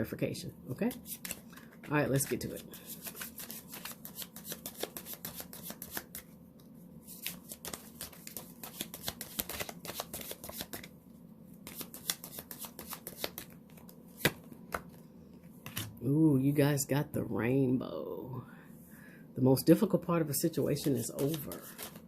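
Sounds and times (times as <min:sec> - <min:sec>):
cards being shuffled: 0:00.9 - 0:10.9, 0:11.6 - 0:15.0, 0:20.7 - 0:22.0.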